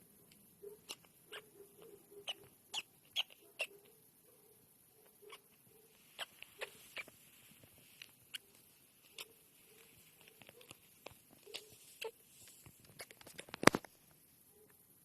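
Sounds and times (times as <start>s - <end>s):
squirrel breathing squeaks: 0.8s - 1.5s, 2.2s - 3.7s, 5.3s - 12.6s.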